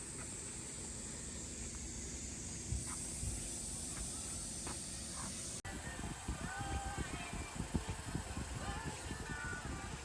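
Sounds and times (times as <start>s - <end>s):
insect chorus: 0.0s - 5.6s.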